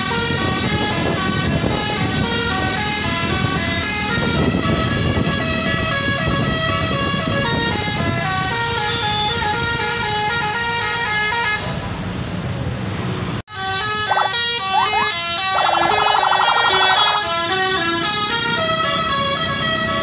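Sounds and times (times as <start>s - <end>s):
multi-tone air horn melody: 13.6s - 17.6s.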